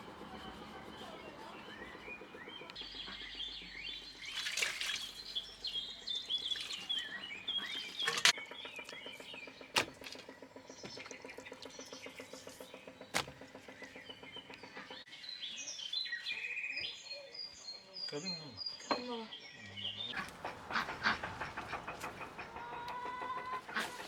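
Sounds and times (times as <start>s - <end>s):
steady low hum: 0.0s - 15.1s
small birds chirping: 0.0s - 24.0s
sharp knocks: 8.1s - 14.0s.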